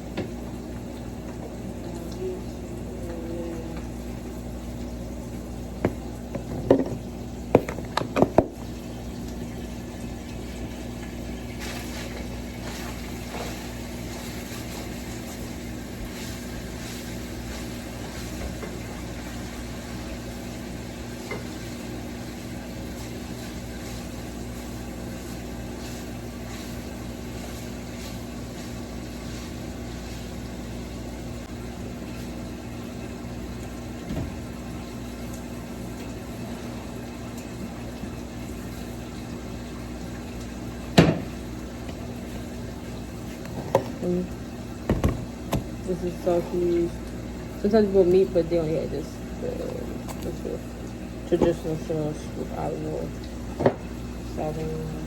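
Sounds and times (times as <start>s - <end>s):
pot cooking on stove: 0.0s - 55.0s.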